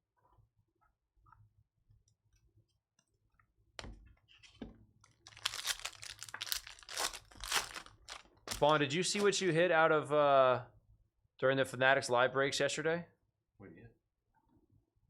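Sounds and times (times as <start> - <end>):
card pack wrapper crinkling: 5.2 - 9.4
wrapper ripping: 5.2 - 9.4.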